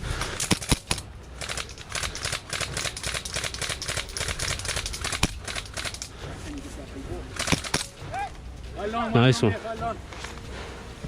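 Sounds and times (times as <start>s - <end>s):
airsoft gunfire clicking shots: 0.0s - 6.3s, 7.3s - 8.0s
loud single cracks: 0.2s - 6.1s, 7.4s - 8.0s.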